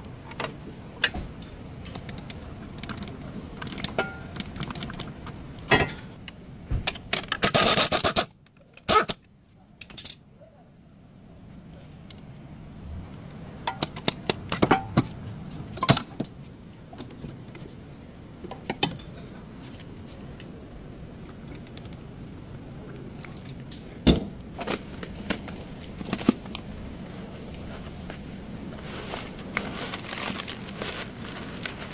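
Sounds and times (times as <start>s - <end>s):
metal tools clinking and scraping: 9.8s - 10.2s.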